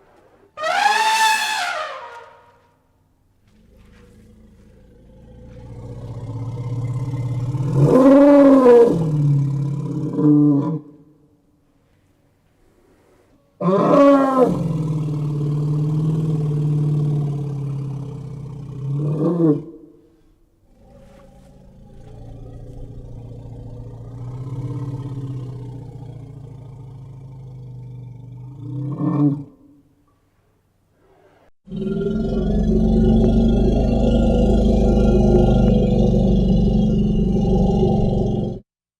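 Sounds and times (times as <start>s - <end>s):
elephant rumble and cry: 0.0s - 2.5s, 3.5s - 9.8s, 20.7s - 29.0s.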